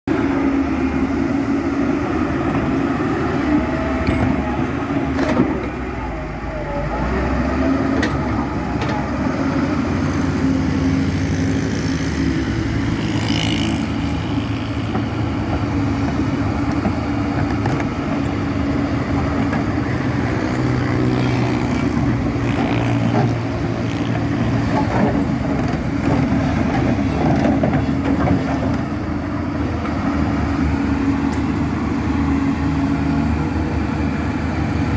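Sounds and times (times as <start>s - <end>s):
excavator diesel engine running: 0.1s - 34.9s.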